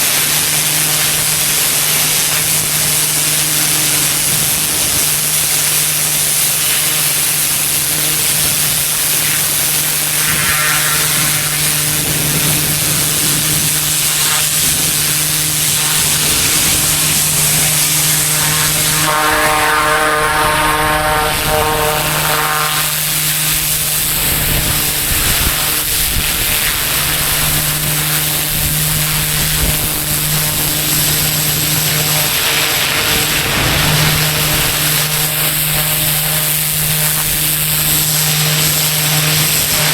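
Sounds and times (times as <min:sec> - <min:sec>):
higher pitched whine: 0:00.0 - 0:39.9
pressure washer engine hum: 0:00.0 - 0:39.9
water spray hissing on pavement: 0:00.0 - 0:39.9.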